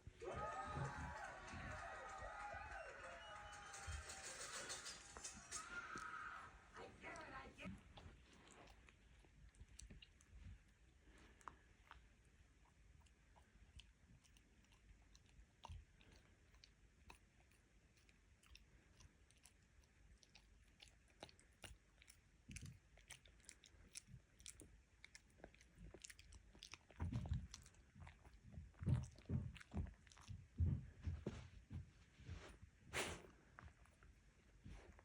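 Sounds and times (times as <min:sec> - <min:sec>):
puppy chewing and gnawing: 0:06.8 - 0:31.4.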